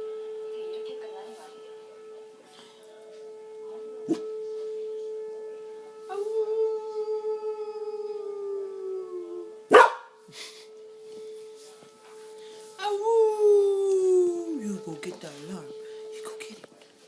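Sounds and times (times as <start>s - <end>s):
tornado siren: 0.0s - 16.7s
dog howling: 6.0s - 10.1s.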